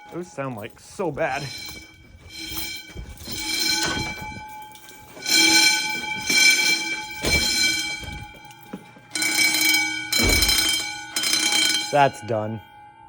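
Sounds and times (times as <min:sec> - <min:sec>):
fire alarm bells ringing: 0:00.0 - 0:13.0.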